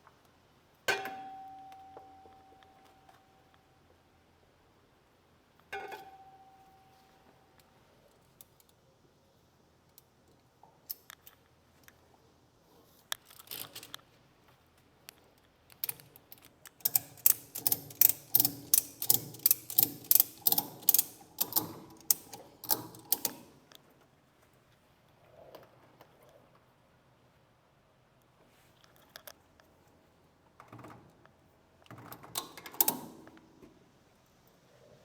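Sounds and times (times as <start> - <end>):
ratchet strap clicking: 16.7 - 23.5.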